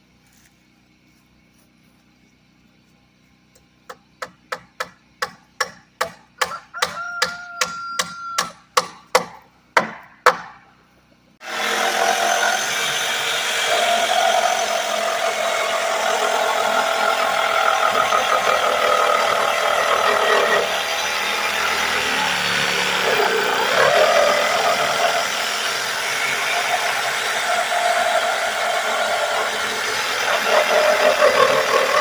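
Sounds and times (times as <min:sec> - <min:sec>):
loud steady machine noise: 0:11.4 - 0:32.0.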